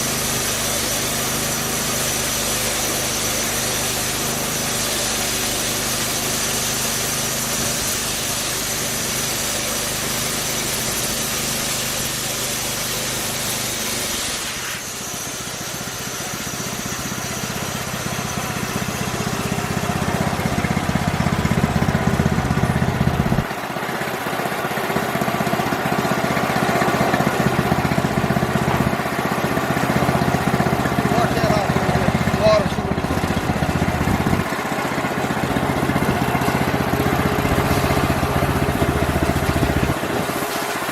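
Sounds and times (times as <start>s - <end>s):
band saw blade cutting log: 0.0s - 23.5s, 26.8s - 40.9s
small engine running: 0.0s - 40.9s.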